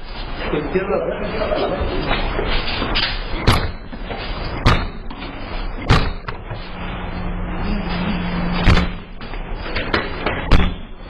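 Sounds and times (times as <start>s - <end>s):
noisy background: 0.0s - 11.0s
loud bang: 4.6s - 6.7s, 8.2s - 9.3s.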